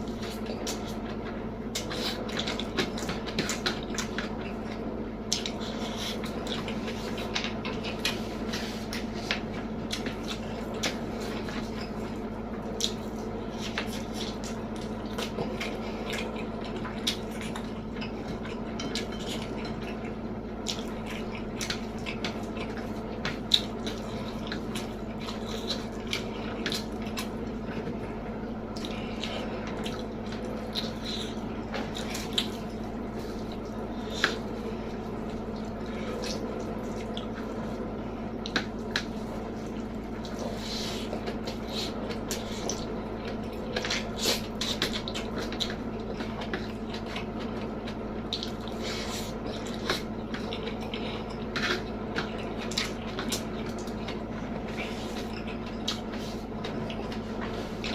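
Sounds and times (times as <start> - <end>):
wet chewing and mouth smacks: 0.0 - 37.8, 38.4 - 57.9
steady low hum: 0.0 - 57.9.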